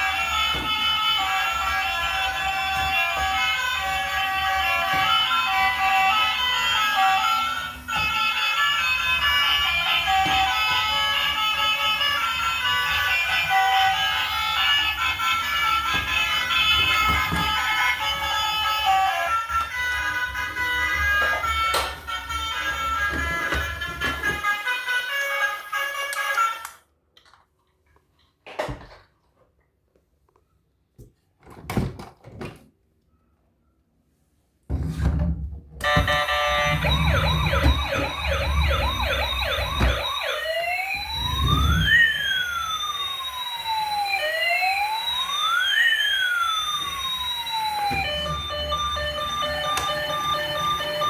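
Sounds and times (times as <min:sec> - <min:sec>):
music: 0:00.0 - 0:26.8
toy electronic siren: 0:00.0 - 0:26.8, 0:35.8 - 0:51.0
pulsing electronic jingle: 0:36.0 - 0:41.8.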